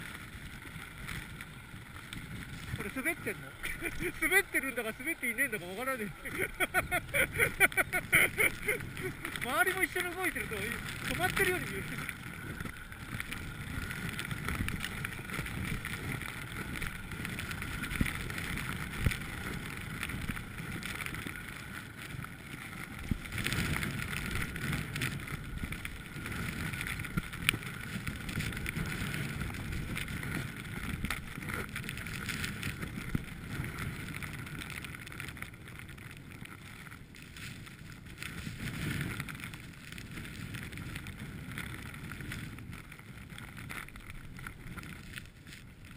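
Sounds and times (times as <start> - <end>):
wind buffeting microphone: 0.0 - 35.7
skis sliding on snow: 0.0 - 45.9.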